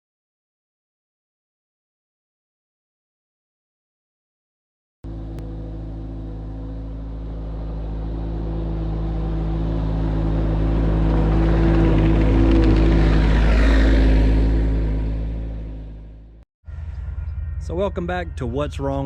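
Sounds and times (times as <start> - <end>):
diesel engine running: 5.1 - 16.4.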